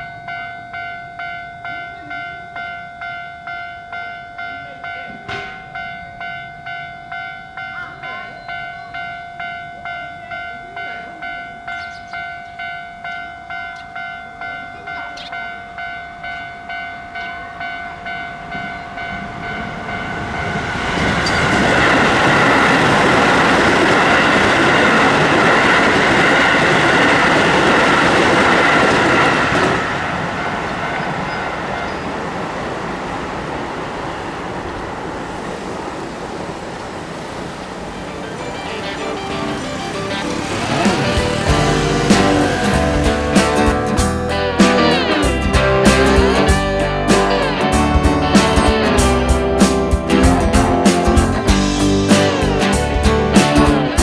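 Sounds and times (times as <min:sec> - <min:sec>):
level crossing bell ringing: 0:00.0 - 0:28.0, 0:38.2 - 0:49.6
electric train passing: 0:00.0 - 0:54.0.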